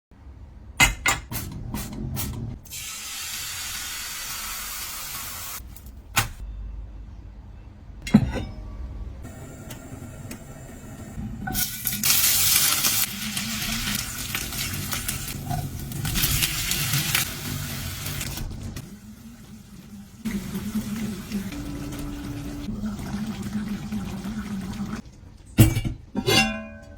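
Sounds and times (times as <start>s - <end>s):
food sizzling in a hot pan: 11.6s - 18.3s.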